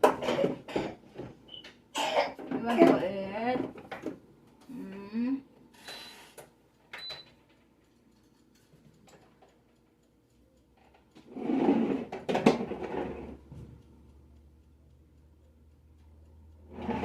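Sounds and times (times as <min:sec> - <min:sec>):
click with high beep: 0:06.9 - 0:07.4.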